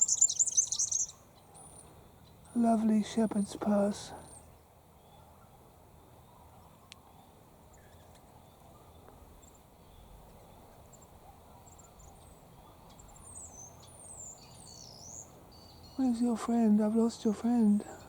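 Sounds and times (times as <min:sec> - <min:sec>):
bird chirps: 0:00.0 - 0:02.4, 0:06.4 - 0:16.2.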